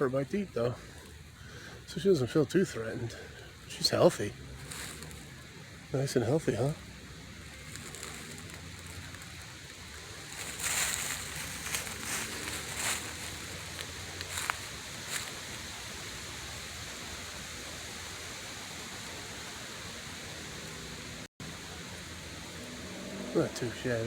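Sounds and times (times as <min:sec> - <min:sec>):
outdoor background hiss: 0:00.0 - 0:24.0
rustling crunching: 0:04.6 - 0:05.5, 0:07.4 - 0:15.7.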